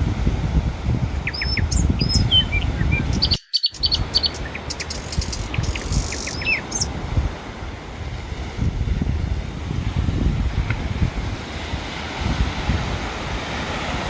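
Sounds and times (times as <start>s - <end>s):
surf: 0.0s - 14.0s
wind: 0.0s - 14.0s
small birds chirping: 1.2s - 6.9s.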